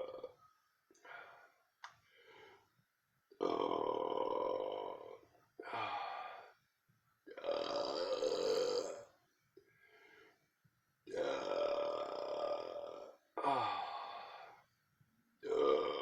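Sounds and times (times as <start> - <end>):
person burping: 3.4 - 5.2, 7.3 - 9.0, 11.1 - 13.8, 15.4 - 16.0.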